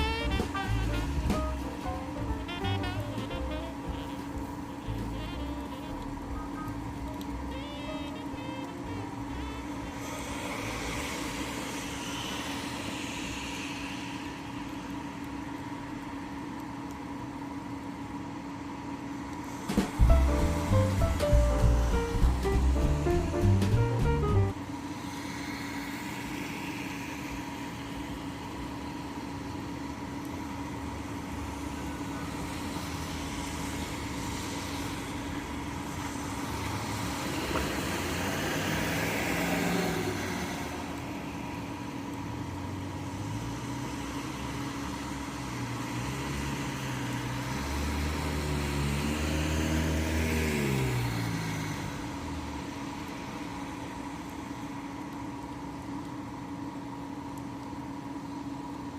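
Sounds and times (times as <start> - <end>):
vehicle passing on wet road: 0.0 - 7.5, 9.3 - 16.4, 31.4 - 53.9
steady rain: 0.0 - 50.2
low mechanical hum: 0.0 - 58.9.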